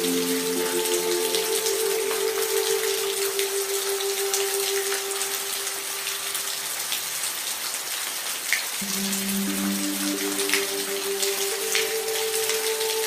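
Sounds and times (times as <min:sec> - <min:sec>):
steady rain: 0:00.0 - 0:13.0.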